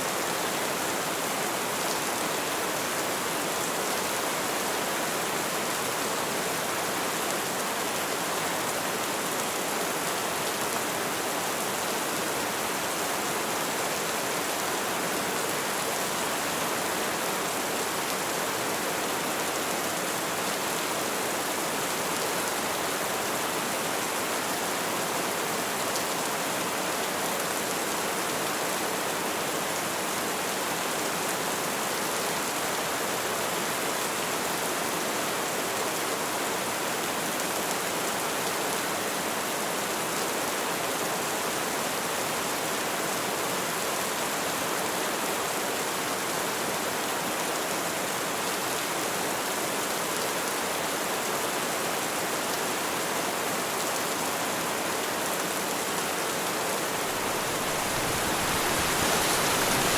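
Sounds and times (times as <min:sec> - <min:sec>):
heavy rain falling: 0:56.7 - 0:59.9.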